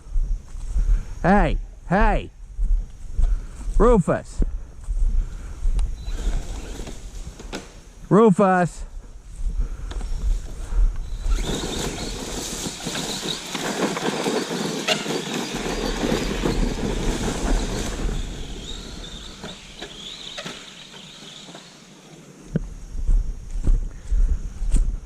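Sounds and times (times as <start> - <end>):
rc truck rattling and clattering: 6.1 - 7.8, 11.1 - 22.0.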